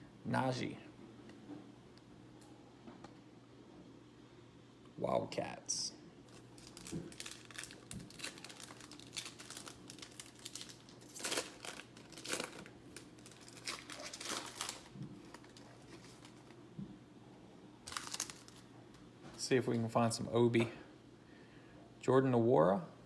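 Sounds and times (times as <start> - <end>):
plastic wrappers crinkling and tearing: 6.3 - 16.6, 17.8 - 18.7.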